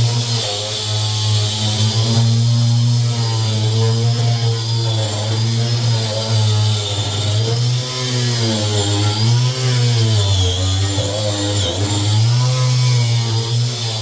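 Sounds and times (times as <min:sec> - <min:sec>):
wire wheel grinding metal: 0:00.0 - 0:14.0.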